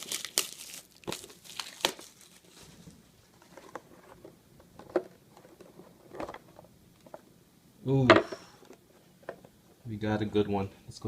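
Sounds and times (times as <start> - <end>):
packaging crinkling and tearing: 0.0 - 2.8
packaging rustling: 0.0 - 4.3.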